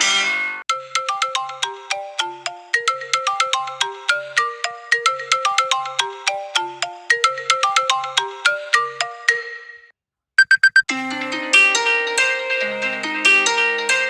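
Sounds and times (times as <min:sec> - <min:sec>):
phone ringtone melody: 0:00.7 - 0:10.8
short high beeps: 0:10.4 - 0:10.9.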